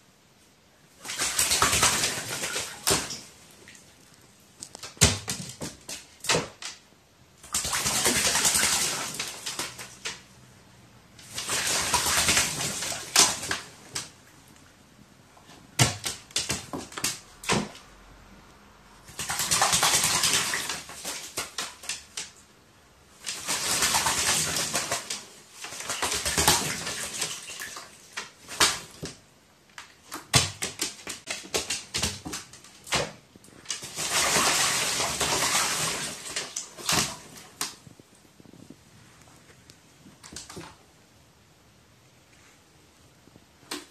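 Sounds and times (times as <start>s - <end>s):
bird splashing in water: 1.0s - 3.9s, 7.4s - 10.2s, 11.2s - 14.2s, 19.0s - 22.3s, 23.2s - 29.2s, 30.1s - 37.8s.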